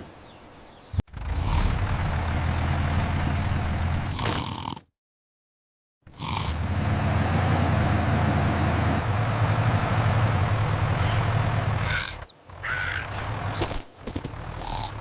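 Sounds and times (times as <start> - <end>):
tractor engine humming: 1.1 - 4.1, 6.2 - 15.0.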